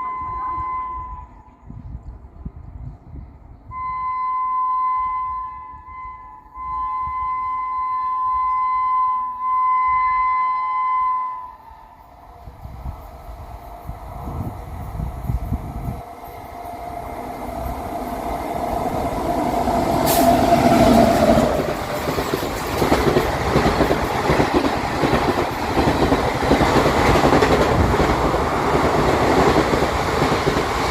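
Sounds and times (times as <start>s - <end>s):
steady tone: 3.7s - 27.4s
train wheels rattling on rails: 12.1s - 30.9s.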